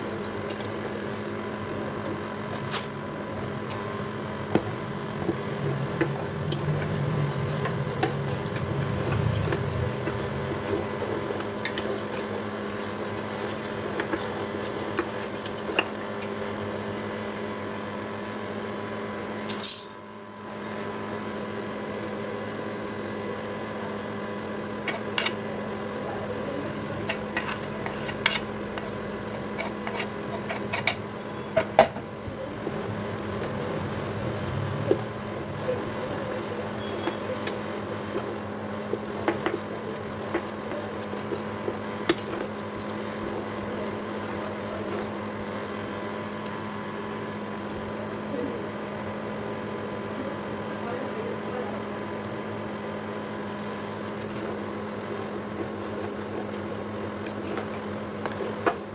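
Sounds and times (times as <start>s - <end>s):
steady low hum: 0.0s - 16.4s, 19.5s - 48.5s.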